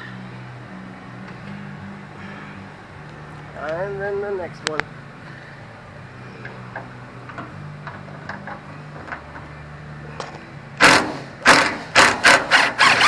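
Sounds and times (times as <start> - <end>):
impact wrench bursts: 10.8 - 13.0.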